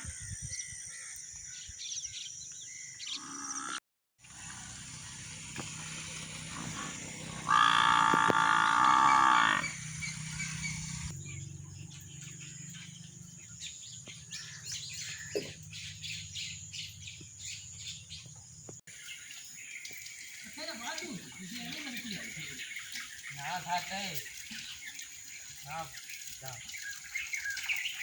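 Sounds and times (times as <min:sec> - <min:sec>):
small birds chirping: 0:00.0 - 0:28.0
loud steady pitched call: 0:06.4 - 0:12.5.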